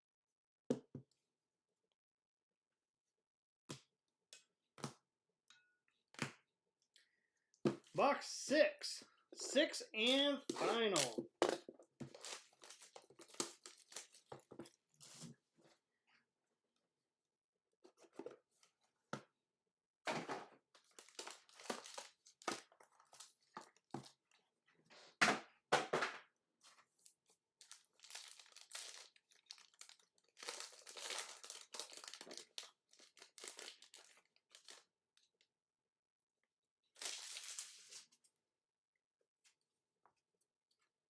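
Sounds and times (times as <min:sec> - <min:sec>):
packaging tearing and crinkling: 0:12.1 - 0:14.2, 0:27.6 - 0:34.8.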